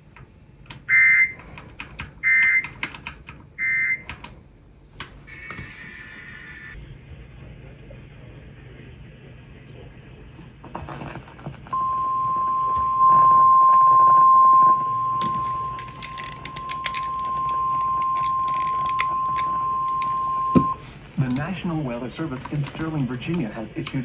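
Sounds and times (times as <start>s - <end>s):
steady alarm beep: 0.9s - 1.4s, 2.2s - 2.7s, 3.6s - 4.1s, 11.8s - 20.8s
radio static crackle: 10.7s - 24.0s.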